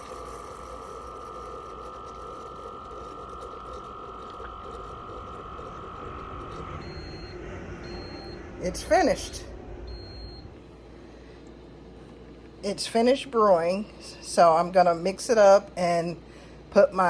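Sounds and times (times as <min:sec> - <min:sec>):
coffee maker whining: 0:00.0 - 0:11.2
short beep: 0:06.8 - 0:10.6.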